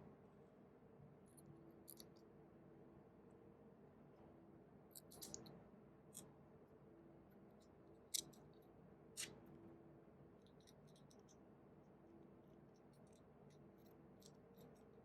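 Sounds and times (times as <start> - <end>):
small metal screws and tools handled: 5.0 - 5.5.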